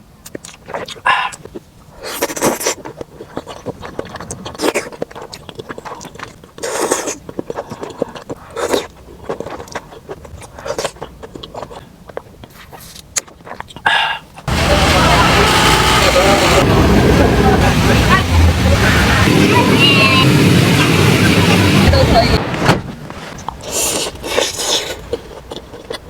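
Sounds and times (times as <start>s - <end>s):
chewing and biting: 0.2s - 14.5s, 23.3s - 26.0s
small mouth clicks: 0.2s - 14.5s
loud noisy burst: 14.5s - 23.3s.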